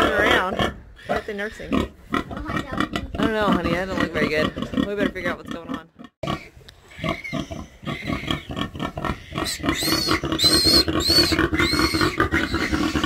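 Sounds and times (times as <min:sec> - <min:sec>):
pig grunting: 0:00.0 - 0:13.0
piglets squealing: 0:00.1 - 0:01.8, 0:06.3 - 0:13.0.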